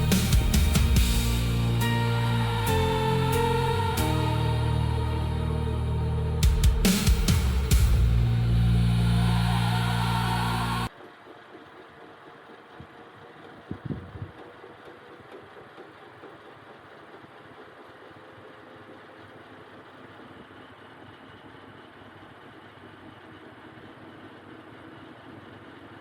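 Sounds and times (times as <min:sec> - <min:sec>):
background music: 0:00.0 - 0:10.9.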